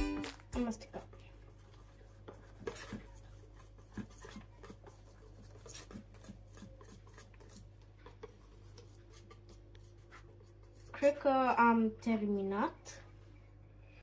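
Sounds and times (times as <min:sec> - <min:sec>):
utensil scraping a bowl: 0:00.9 - 0:11.3.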